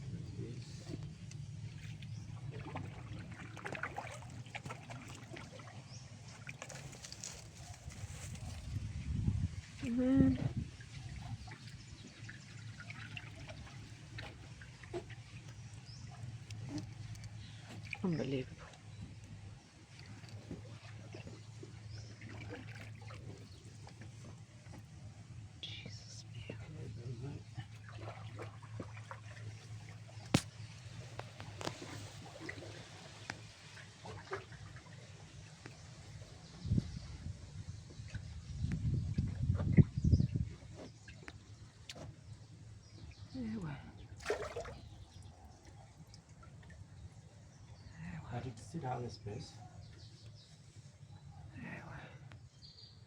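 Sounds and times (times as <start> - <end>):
low steady hum: 0.0 - 53.0
water trickling and lapping: 0.0 - 53.0
small splashes: 0.9 - 8.8, 9.7 - 25.0, 27.4 - 36.5, 43.0 - 47.2.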